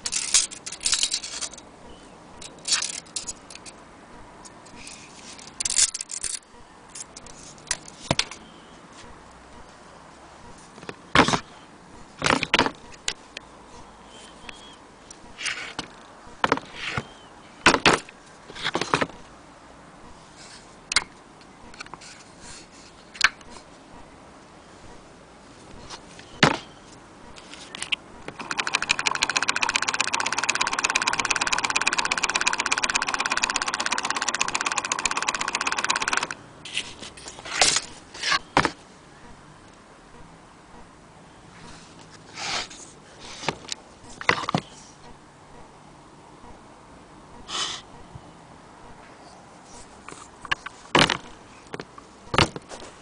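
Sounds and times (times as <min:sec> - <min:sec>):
sewing machine stitching: 0:28.4 - 0:36.4.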